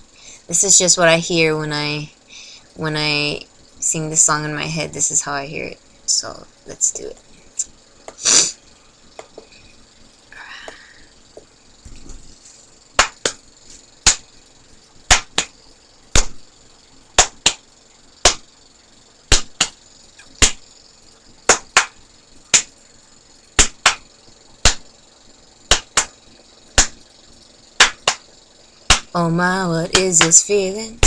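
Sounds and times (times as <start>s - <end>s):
percussion beat of sharp clicks: 13.0s - 13.4s, 14.0s - 14.3s, 15.1s - 16.4s, 17.2s - 18.5s, 19.3s - 20.6s, 21.5s - 22.7s, 23.6s - 24.9s, 25.7s - 26.2s, 26.8s - 27.0s, 27.8s - 28.3s, 28.9s - 29.2s, 29.9s - 30.4s.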